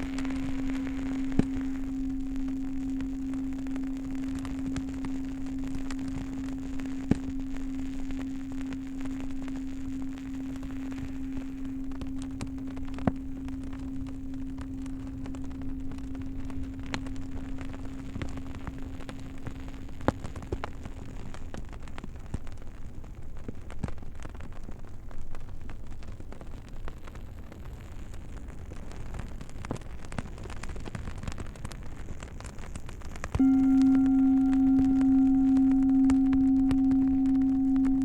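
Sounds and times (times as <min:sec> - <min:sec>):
singing bowl hum: 0:00.0 - 0:21.4, 0:33.4 - 0:38.0
campfire crackling and popping: 0:00.0 - 0:38.0.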